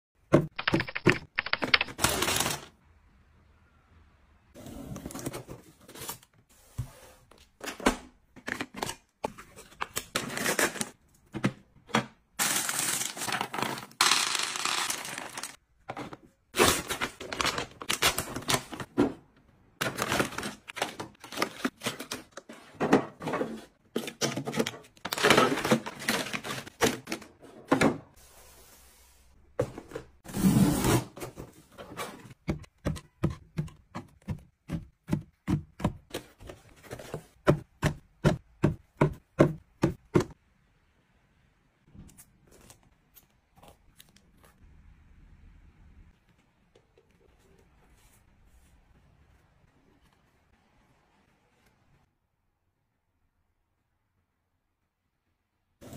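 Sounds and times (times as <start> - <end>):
packaging crinkling and rustling: 16.6 - 18.9.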